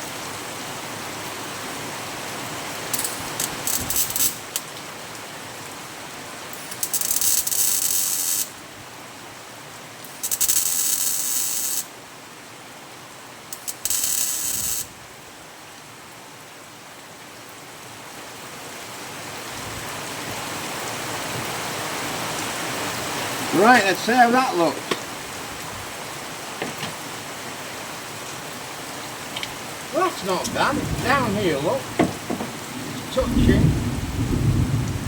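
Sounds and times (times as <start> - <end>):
steady rain hiss: 0.0 - 35.0
crackling welder bursts: 2.9 - 4.6, 6.6 - 8.5, 10.1 - 11.9, 13.6 - 14.9.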